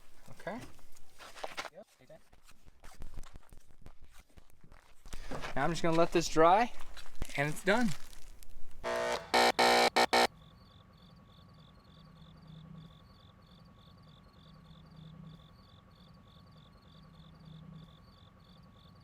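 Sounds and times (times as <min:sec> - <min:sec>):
loud brief tone: 0:08.9 - 0:10.3
crickets chirping: 0:10.4 - 0:19.0.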